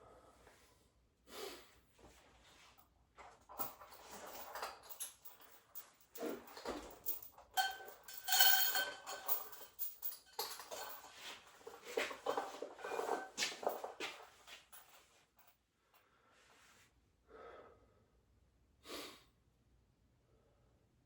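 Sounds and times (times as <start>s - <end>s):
hard objects clattering and clinking: 3.5s - 14.2s
ringing metallic clink: 7.6s - 10.6s.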